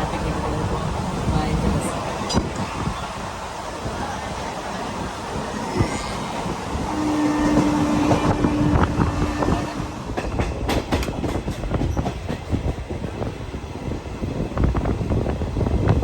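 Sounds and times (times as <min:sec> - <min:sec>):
train rumble: 0:00.0 - 0:16.0
train wheels clattering over rail joints: 0:05.5 - 0:13.2.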